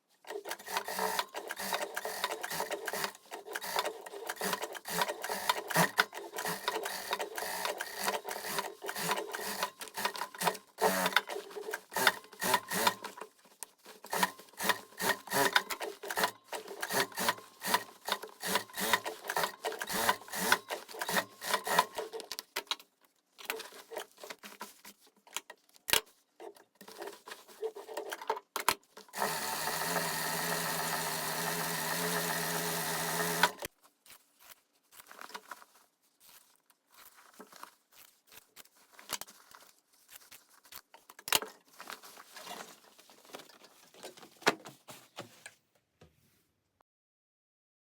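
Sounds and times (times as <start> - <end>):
sewing machine stitching: 0.3 - 13.2, 14.0 - 22.3, 29.1 - 33.7.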